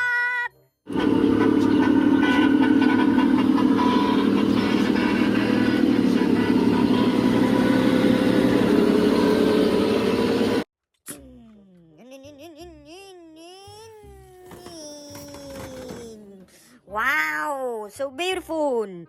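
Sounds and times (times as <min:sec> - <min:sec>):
loud mechanical rumbling: 0:00.9 - 0:10.7.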